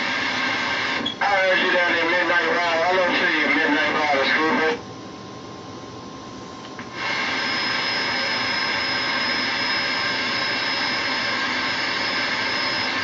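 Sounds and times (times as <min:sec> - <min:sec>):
radio static hiss: 0:00.0 - 0:04.8.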